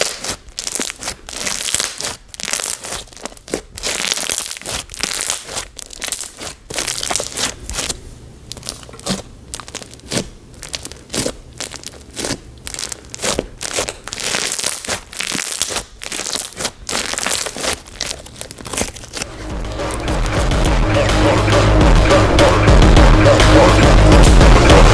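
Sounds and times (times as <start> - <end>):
slime crackling and popping: 0.0 - 20.9
music: 19.2 - 24.9.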